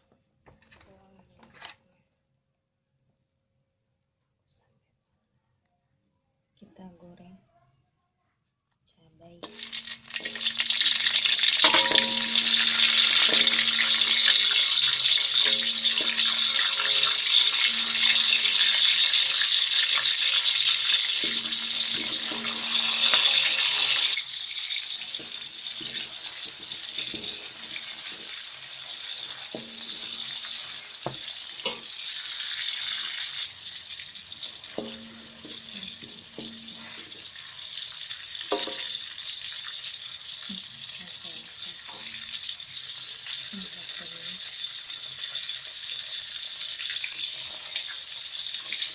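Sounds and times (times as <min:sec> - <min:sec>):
chilies sizzling in hot oil: 0:09.4 - 0:48.9
spatula scraping a pan: 0:09.6 - 0:24.2, 0:24.8 - 0:33.5, 0:34.3 - 0:38.8.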